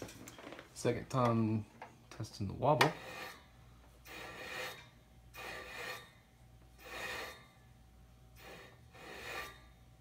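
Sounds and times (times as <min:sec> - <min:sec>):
wheel rubbing rasp: 0:02.9 - 0:06.2, 0:06.8 - 0:07.6, 0:08.4 - 0:09.8.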